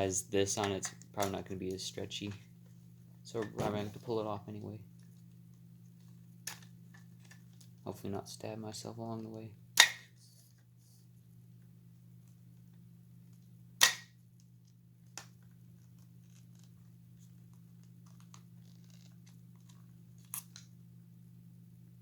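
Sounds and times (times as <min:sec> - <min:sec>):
loud snap: 0:09.8 - 0:10.1, 0:13.8 - 0:14.1.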